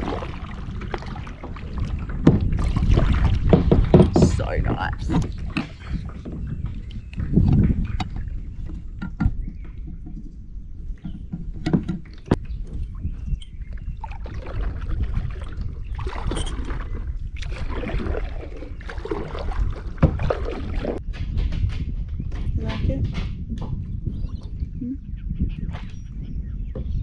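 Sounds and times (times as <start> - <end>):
kayak paddle splashing water: 0.0 - 8.9, 13.8 - 21.0
wind on microphone: 0.0 - 27.0.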